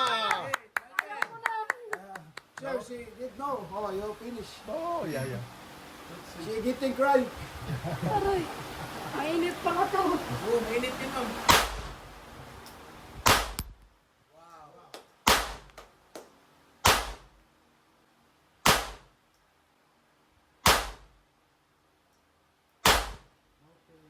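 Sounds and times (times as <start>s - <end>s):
handgun shots with echo: 11.5s - 11.9s, 13.2s - 13.7s, 15.3s - 15.7s, 16.8s - 17.3s, 18.6s - 19.1s, 20.6s - 21.0s, 22.8s - 23.3s.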